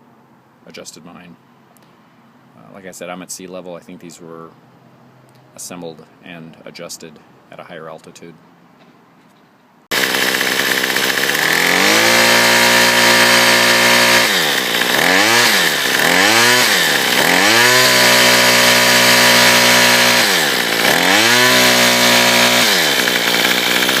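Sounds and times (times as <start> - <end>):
string trimmer engine revving: 9.9 - 24.0.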